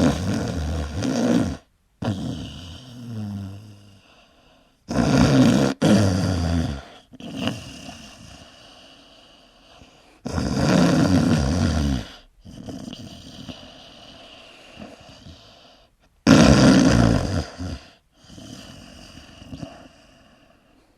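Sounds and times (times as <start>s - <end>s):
person snoring: 0.0s - 20.6s
quiet breathing: 2.3s - 4.9s, 6.6s - 10.3s, 11.9s - 16.2s, 17.4s - 20.9s.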